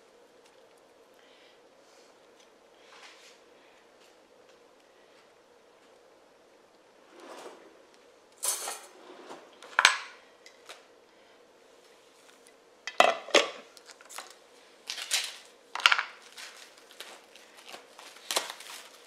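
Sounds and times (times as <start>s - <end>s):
dishes and utensils clinking: 8.4s - 9.0s, 12.9s - 13.6s.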